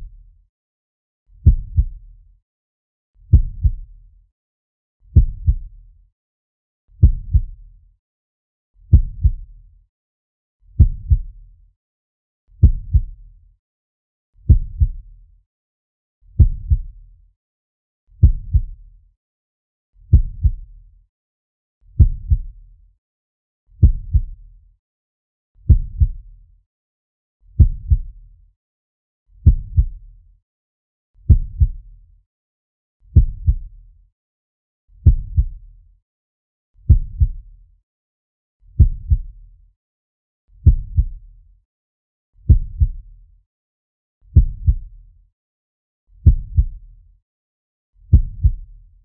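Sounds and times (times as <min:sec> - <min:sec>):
heartbeat double thump: 0:01.4 - 0:01.9, 0:03.3 - 0:03.8, 0:05.2 - 0:05.6, 0:07.0 - 0:07.5, 0:08.9 - 0:09.4, 0:10.8 - 0:11.3, 0:12.6 - 0:13.1, 0:14.5 - 0:15.0, 0:16.4 - 0:16.9, 0:18.2 - 0:18.7, 0:20.1 - 0:20.6, 0:22.0 - 0:22.5, 0:23.8 - 0:24.3, 0:25.7 - 0:26.2, 0:27.6 - 0:28.1, 0:29.4 - 0:29.9, 0:31.3 - 0:31.8, 0:33.2 - 0:33.6, 0:35.0 - 0:35.6, 0:36.9 - 0:37.4, 0:38.8 - 0:39.3, 0:40.7 - 0:41.1, 0:42.5 - 0:43.0, 0:44.4 - 0:44.9, 0:46.2 - 0:46.7, 0:48.1 - 0:48.6.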